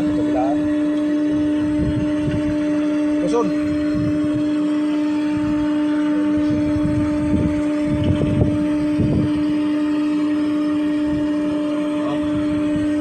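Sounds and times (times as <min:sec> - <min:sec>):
winch gearbox humming: 0:00.0 - 0:13.0.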